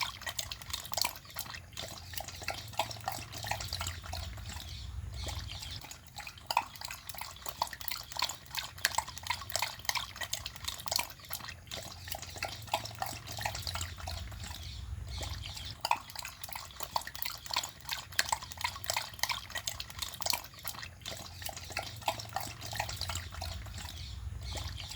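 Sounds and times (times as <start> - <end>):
dog lapping water: 0.0 - 24.9.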